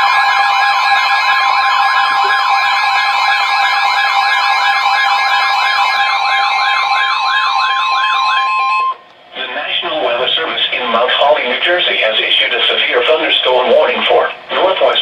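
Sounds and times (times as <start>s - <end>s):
steady high alert tone: 0.0s - 9.0s
siren-like warble: 0.0s - 9.1s.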